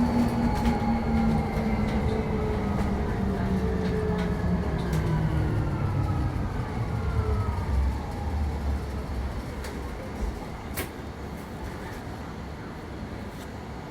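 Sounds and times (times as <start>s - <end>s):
electric bus drive whine: 0.0s - 10.7s.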